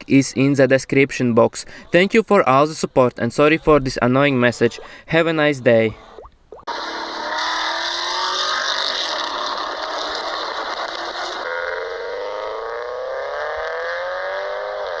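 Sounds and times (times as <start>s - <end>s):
car engine accelerating: 6.7s - 15.0s.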